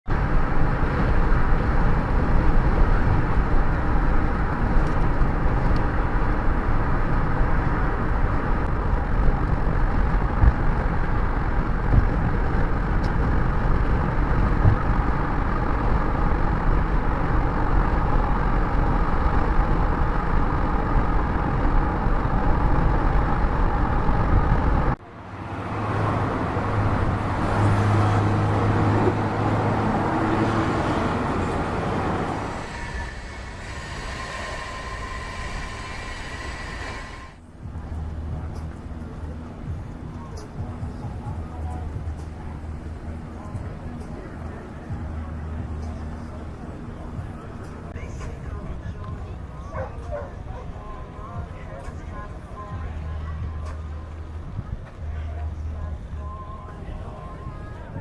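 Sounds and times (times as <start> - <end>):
car engines rumbling: 0.0 - 58.0
low engine hum: 0.1 - 58.0.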